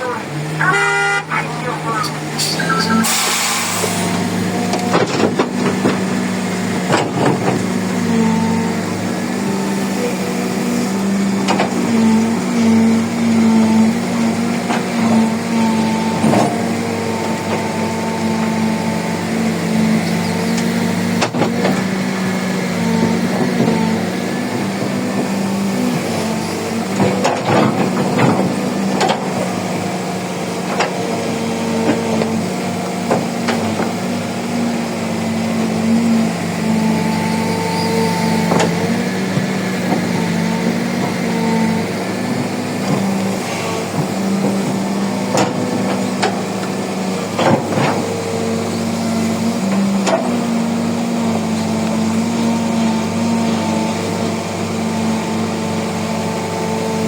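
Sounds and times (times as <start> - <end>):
excavator diesel engine running: 0.0 - 57.0.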